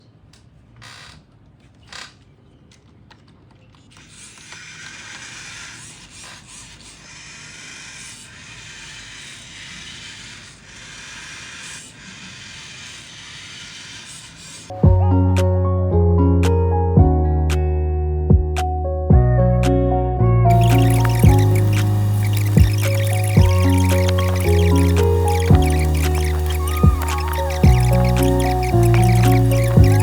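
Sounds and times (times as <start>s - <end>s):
faint motor whirring with knocks: 0.4s - 14.7s, 20.5s - 30.0s
toy robot clicks: 3.9s - 6.4s.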